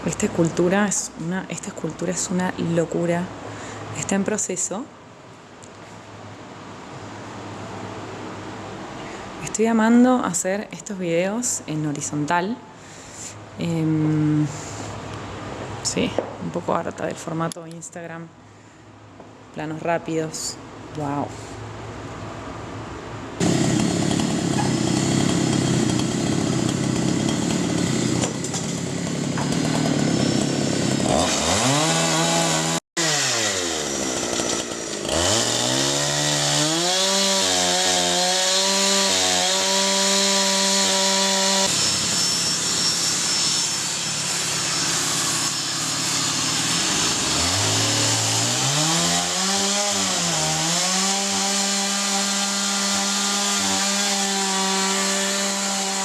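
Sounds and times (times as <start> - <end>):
harsh cutting noise: 23.4 - 56.0
power tool motor whine: 38.1 - 49.6.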